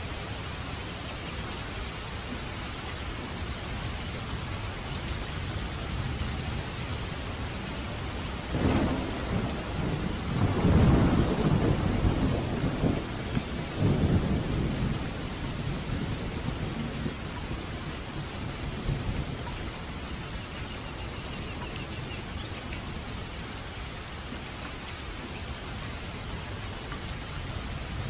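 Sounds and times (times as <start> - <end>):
light rain: 0.0 - 28.0
distant thunder rumbling: 7.4 - 22.5.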